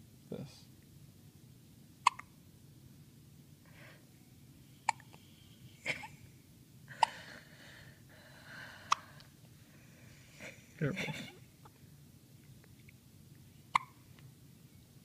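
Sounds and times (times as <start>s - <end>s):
baby hiccuping: 2.0s - 2.3s, 4.8s - 5.2s, 13.7s - 14.0s
soft breathy sounds: 3.6s - 4.2s, 6.9s - 10.9s.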